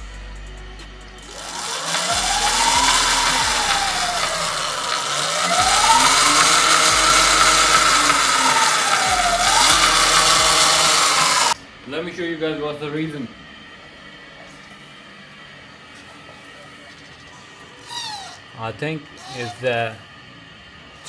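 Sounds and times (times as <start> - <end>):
chain ticking: 0.4 - 11.6
electric motor whine revving: 1.2 - 11.6, 19.2 - 19.9.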